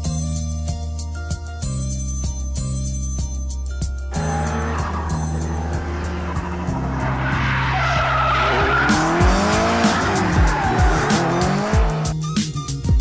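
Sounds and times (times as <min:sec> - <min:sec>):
background music with a beat: 0:00.0 - 0:13.0
car engine revving: 0:04.1 - 0:12.1
tyres squealing: 0:04.1 - 0:12.1.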